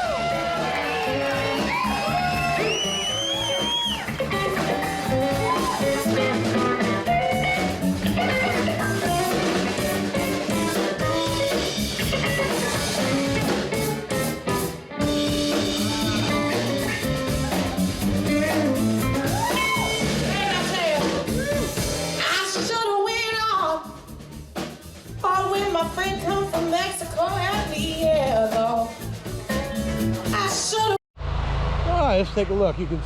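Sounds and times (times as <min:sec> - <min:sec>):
blues rock with guitar and drums: 0:00.0 - 0:22.7.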